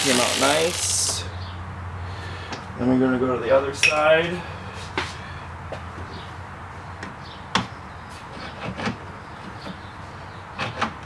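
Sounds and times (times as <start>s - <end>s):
hand tools clicking on metal: 0.0s - 1.2s.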